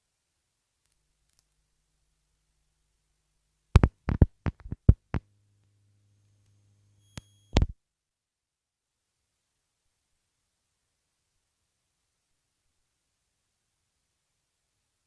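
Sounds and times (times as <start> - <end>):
low steady hum: 0.0 - 7.8
clicks: 6.4 - 7.8.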